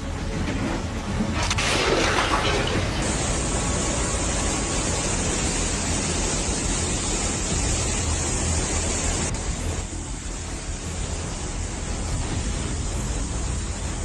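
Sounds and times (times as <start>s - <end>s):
fast-moving water rushing: 1.3s - 9.8s.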